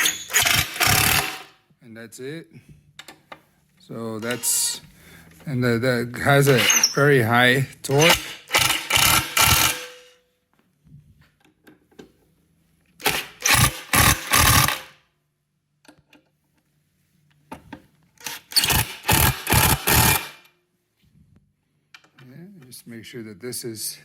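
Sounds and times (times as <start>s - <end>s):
impact driver rattling bursts: 0.0s - 1.5s, 7.8s - 10.1s, 13.0s - 15.0s, 18.2s - 20.5s.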